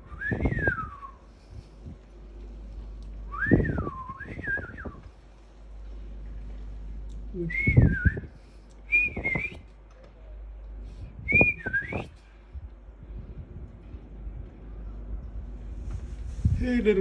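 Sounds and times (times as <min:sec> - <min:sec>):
whistled phrases bending in pitch: 0:07.4 - 0:08.3, 0:08.9 - 0:09.6, 0:11.3 - 0:12.1.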